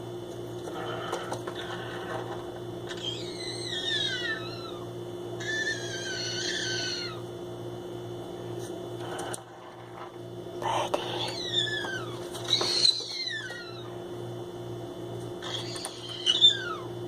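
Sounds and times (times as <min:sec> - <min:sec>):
parrot whiny calls: 0:02.9 - 0:04.8, 0:05.4 - 0:07.2, 0:11.4 - 0:14.0, 0:15.4 - 0:17.0.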